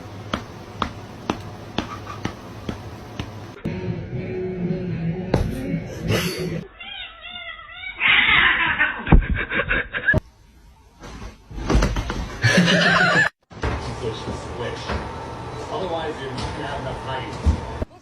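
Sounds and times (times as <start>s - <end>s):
cat meowing: 6.6s - 8.5s.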